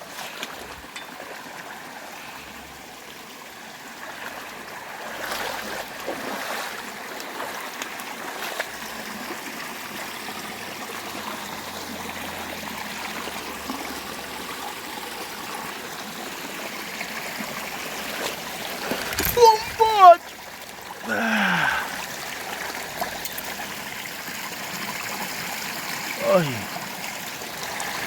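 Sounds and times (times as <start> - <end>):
stream water trickling: 0.0 - 28.0.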